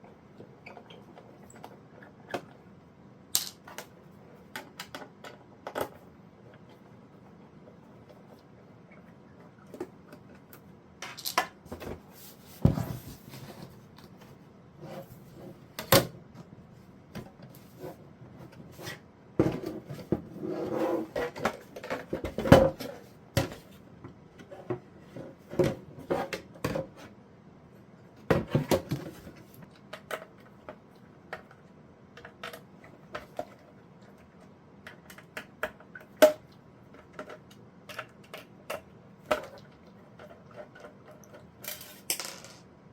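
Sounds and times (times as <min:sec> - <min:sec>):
rustling handling noise: 0:09.4 - 0:15.6.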